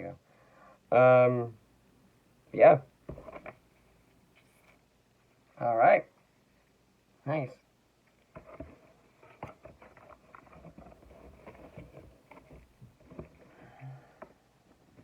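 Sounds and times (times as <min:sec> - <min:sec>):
objects knocking and rustling: 0:03.0 - 0:03.8, 0:08.3 - 0:15.0.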